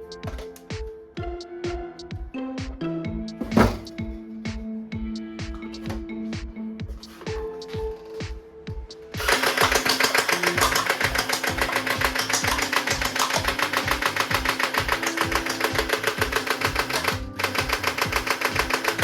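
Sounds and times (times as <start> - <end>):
background music with beat: 0.0 - 19.0
toy gun rapid clicking: 9.2 - 19.0.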